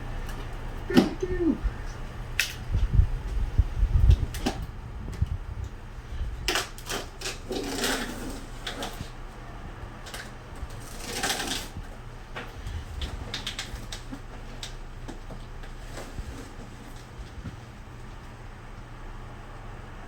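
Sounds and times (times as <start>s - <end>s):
cardboard scraping and rustling: 6.6s - 9.3s, 10.0s - 17.8s.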